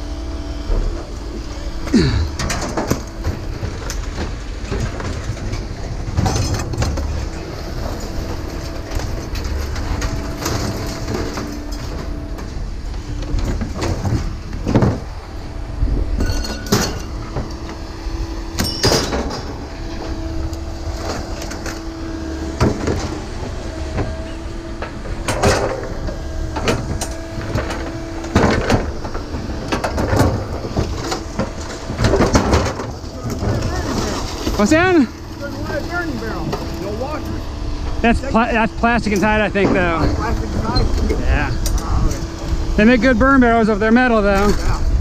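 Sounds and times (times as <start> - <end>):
low machine hum: 0.0 - 45.0
scrap metal clanks and scrapes: 1.9 - 15.1, 16.2 - 17.8, 18.6 - 21.9.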